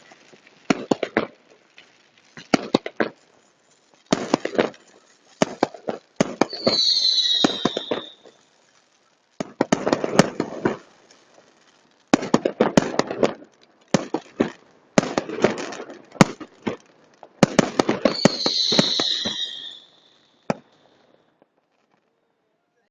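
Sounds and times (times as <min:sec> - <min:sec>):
fireworks bangs and crackling: 0:00.0 - 0:22.5
high falling whistle: 0:06.4 - 0:08.3, 0:18.1 - 0:20.3.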